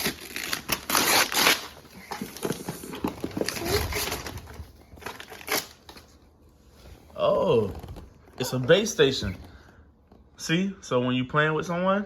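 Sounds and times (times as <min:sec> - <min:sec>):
packaging crinkling: 0:00.0 - 0:06.1.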